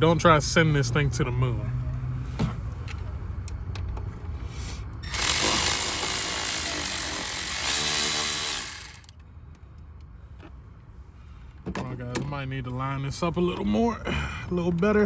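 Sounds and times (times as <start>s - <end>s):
bolt grinding: 5.0s - 9.1s
power driver motor whine: 5.0s - 9.1s.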